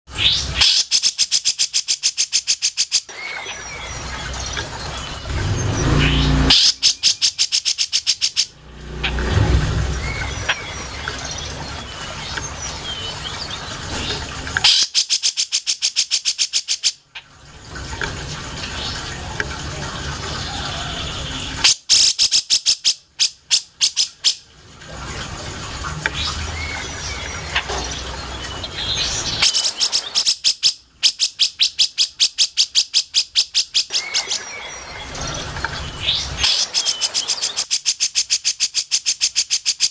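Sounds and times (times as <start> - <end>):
bird chirps: 0.2 - 13.4, 26.2 - 39.9
bird singing sharp high notes: 5.2 - 11.4.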